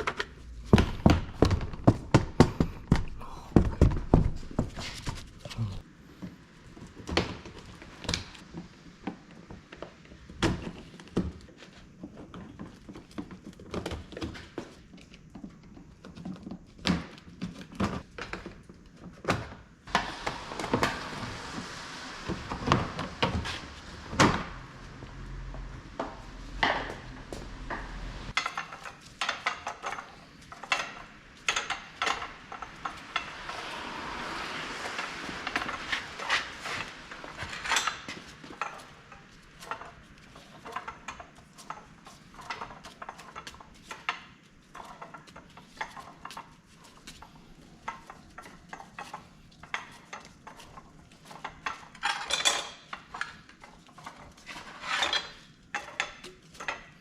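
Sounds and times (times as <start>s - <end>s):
hand tools and metal parts clinking: 23.1s - 57.0s.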